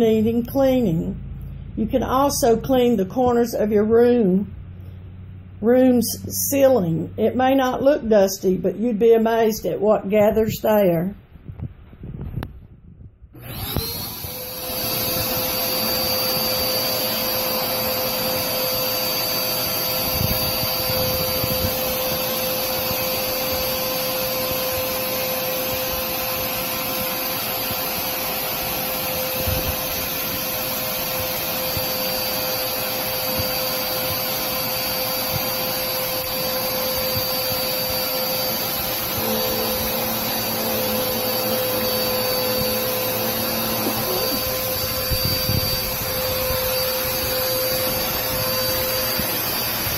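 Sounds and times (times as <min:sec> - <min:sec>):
vacuum cleaner motor whining: 0:13.4 - 0:49.9.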